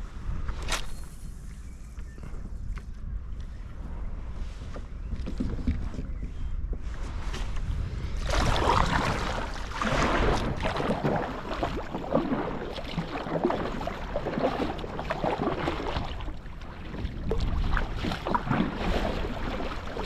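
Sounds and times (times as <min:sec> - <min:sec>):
wind rumble on microphone: 0:00.0 - 0:20.0
water splashing and trickling: 0:08.2 - 0:20.0.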